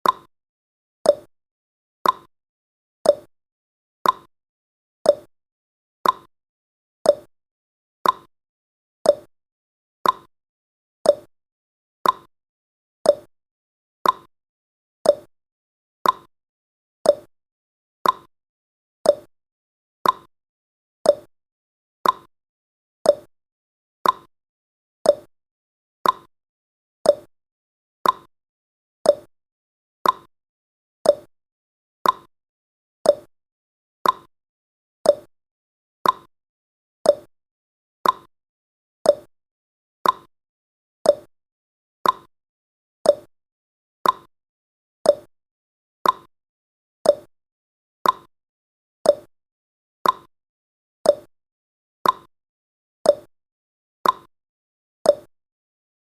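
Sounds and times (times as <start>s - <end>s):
timer ticking: 0.0s - 0.3s, 1.1s - 1.3s, 2.0s - 2.3s, 3.1s - 3.3s, 4.0s - 4.3s, 5.1s - 5.3s, 6.0s - 6.3s, 7.1s - 7.3s, 8.0s - 8.3s, 9.1s - 9.3s, 10.0s - 10.3s, 11.1s - 11.3s, 12.0s - 12.3s, 13.1s - 13.3s, 14.0s - 14.3s, 15.0s - 15.3s, 16.0s - 16.3s, 17.1s - 17.3s, 18.0s - 18.3s, 19.1s - 19.3s, 20.0s - 20.3s, 21.1s - 21.3s, 22.0s - 22.3s, 23.1s - 23.3s, 24.0s - 24.3s, 25.1s - 25.3s, 26.0s - 26.3s, 27.1s - 27.3s, 28.0s - 28.3s, 29.1s - 29.3s, 30.0s - 30.3s, 31.0s - 31.3s, 32.0s - 32.3s, 33.0s - 33.3s, 34.0s - 34.3s, 35.1s - 35.3s, 36.0s - 36.3s, 37.1s - 37.3s, 38.0s - 38.3s, 39.1s - 39.3s, 40.0s - 40.3s, 41.0s - 41.3s, 42.0s - 42.3s, 43.1s - 43.3s, 44.0s - 44.3s, 45.1s - 45.3s, 46.0s - 46.3s, 47.0s - 47.3s, 48.0s - 48.3s, 49.1s - 49.3s, 50.0s - 50.3s, 51.1s - 51.3s, 52.0s - 52.3s, 53.1s - 53.3s, 54.0s - 54.3s, 55.1s - 55.3s.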